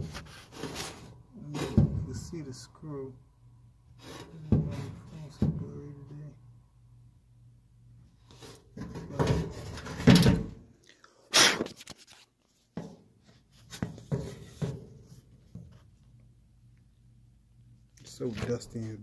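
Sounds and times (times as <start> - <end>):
phone knocking and rubbing: 4.0 - 5.7.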